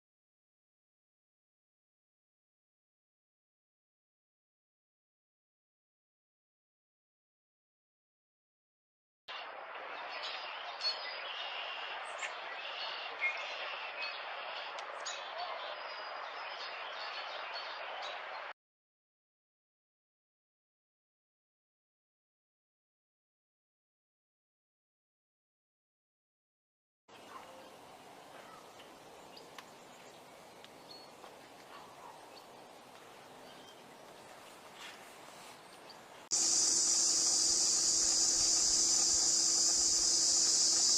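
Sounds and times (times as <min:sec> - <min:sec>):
outdoor background hiss: 0:27.1 - 0:40.9
small birds chirping: 0:28.4 - 0:40.9
steady background hiss: 0:36.2 - 0:40.9
bird chirps: 0:36.3 - 0:40.9.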